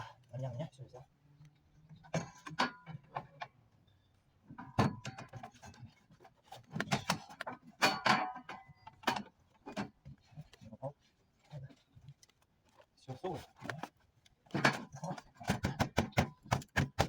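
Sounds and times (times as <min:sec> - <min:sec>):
metal pipe parts clattering: 0:04.5 - 0:10.0, 0:14.5 - 0:15.8.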